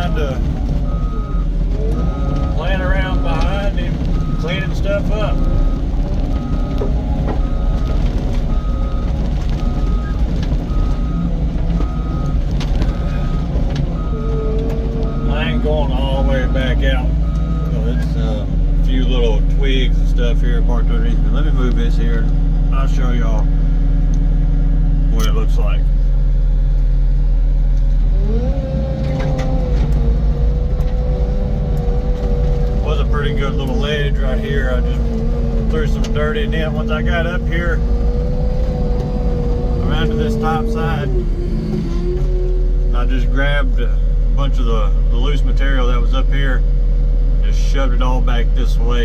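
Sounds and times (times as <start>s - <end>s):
diesel engine running: 0.0s - 49.0s
backup alarm beeping: 0.9s - 18.2s.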